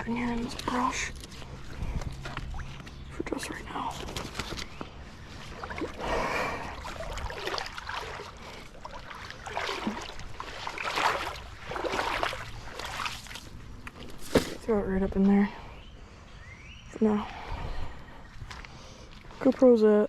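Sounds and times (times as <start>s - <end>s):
water sloshing and splashing: 0.0s - 15.4s, 17.0s - 20.0s.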